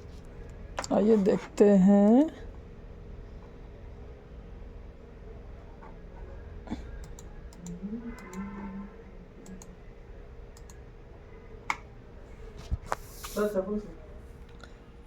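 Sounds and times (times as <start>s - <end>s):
faint electrical hum: 0.0s - 15.0s
computer mouse clicks: 7.0s - 8.5s, 9.4s - 9.8s, 10.6s - 10.8s.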